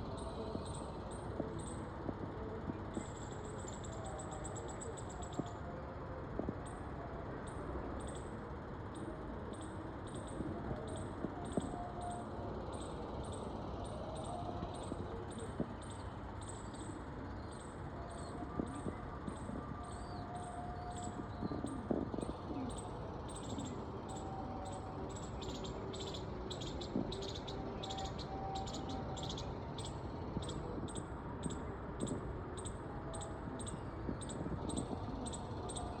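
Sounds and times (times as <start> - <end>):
rapid high-pitched chirping: 9.0 - 36.0.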